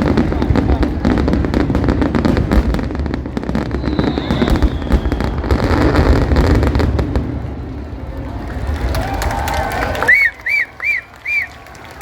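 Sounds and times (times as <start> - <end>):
fireworks crackling and banging: 0.0 - 12.0
faint falling whistle: 3.7 - 5.5, 10.1 - 11.6.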